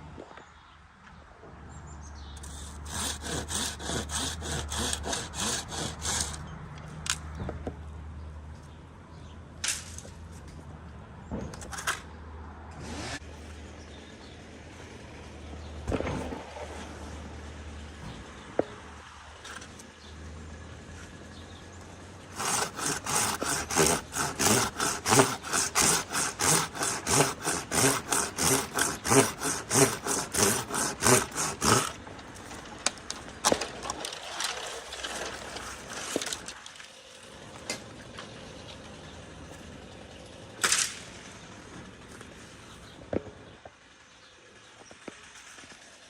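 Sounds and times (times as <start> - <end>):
hand saw cutting wood: 2.4 - 6.5, 12.8 - 13.3, 22.3 - 36.6.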